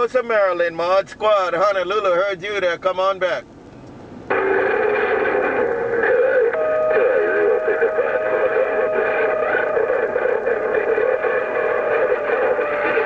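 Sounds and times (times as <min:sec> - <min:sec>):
garbled radio transmissions: 0:04.3 - 0:13.0.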